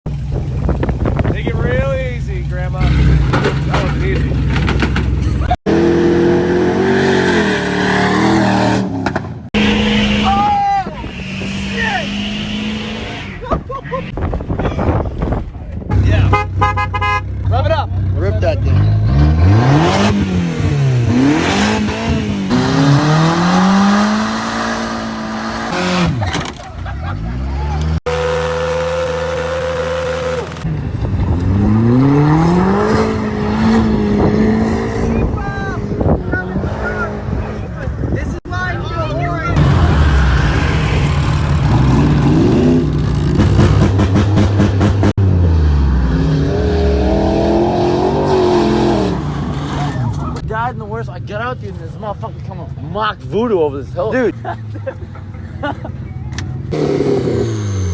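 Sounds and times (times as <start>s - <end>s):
car engine revving hard: 5.7s - 13.3s, 18.6s - 26.2s, 31.4s - 37.6s, 39.6s - 50.3s, 56.7s - 57.9s.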